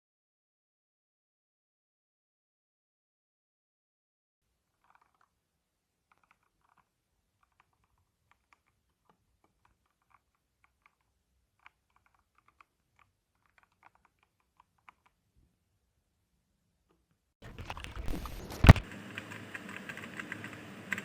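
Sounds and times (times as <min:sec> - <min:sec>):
typing on mechanical keyboard: 0:17.5 - 0:21.0.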